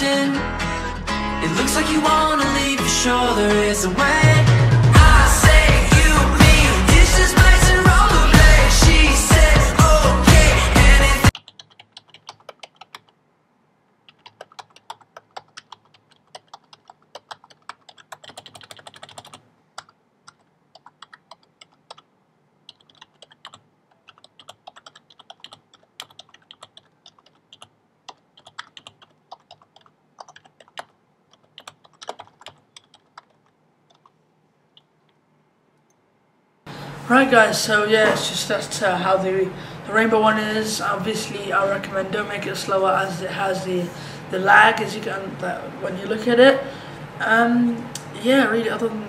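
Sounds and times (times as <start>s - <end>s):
background pop music: 0.0s - 11.3s
keyboard keys clicking: 11.3s - 13.2s, 14.1s - 22.1s, 22.7s - 34.2s.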